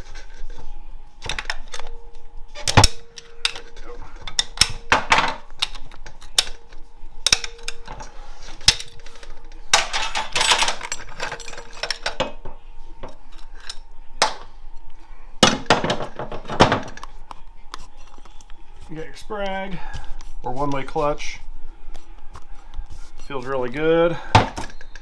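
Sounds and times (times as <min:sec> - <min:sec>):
metal parts clinking and knocking: 0:09.7 - 0:12.4.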